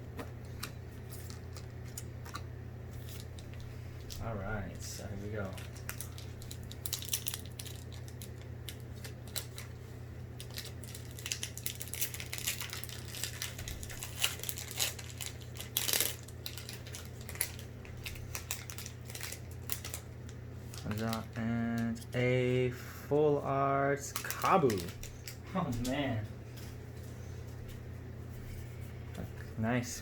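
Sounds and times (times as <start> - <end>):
foil pack crinkling: 1.0 - 4.2, 4.9 - 22.0, 23.9 - 26.6
cards being handled: 24.0 - 27.1.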